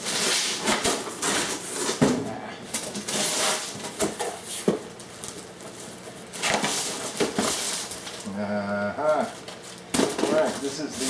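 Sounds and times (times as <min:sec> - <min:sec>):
cardboard and paper rustling: 0:00.0 - 0:08.4, 0:09.0 - 0:11.0.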